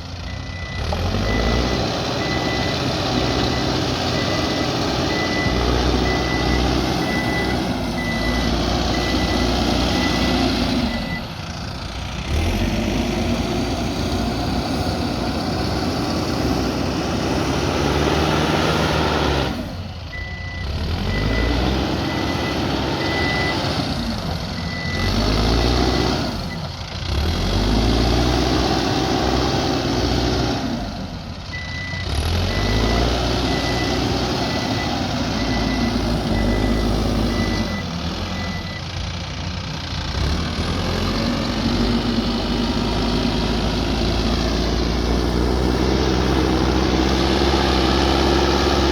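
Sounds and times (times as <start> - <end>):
diesel engine under load: 0.0 - 48.9
reversing alarm beeping: 0.3 - 11.4, 20.1 - 23.9, 24.5 - 26.7, 31.5 - 38.9.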